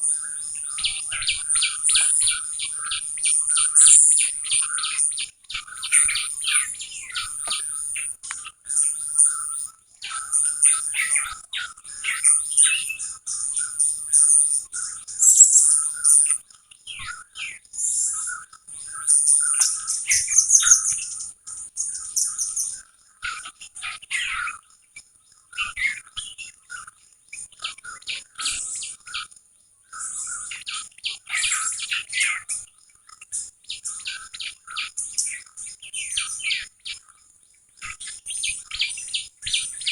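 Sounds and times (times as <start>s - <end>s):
songbirds chirping and twittering: 0.0s - 39.9s.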